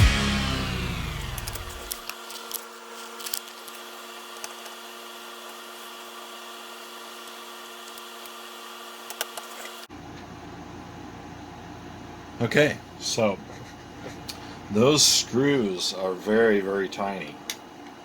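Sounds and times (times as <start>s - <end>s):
low electrical hum: 9.9s - 18.0s.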